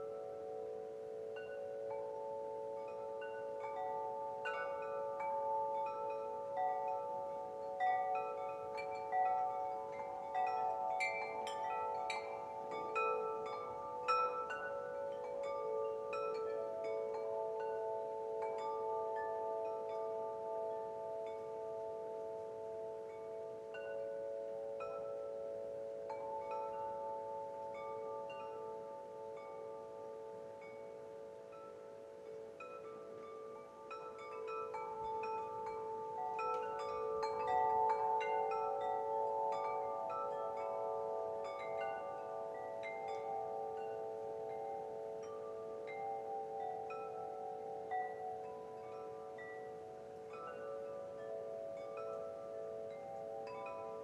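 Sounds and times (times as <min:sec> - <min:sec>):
wind chimes ringing: 0:00.0 - 0:54.0.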